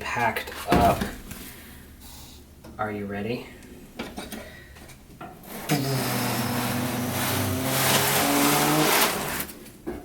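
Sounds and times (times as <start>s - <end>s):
packaging rubbing and scraping: 6.1s - 9.6s.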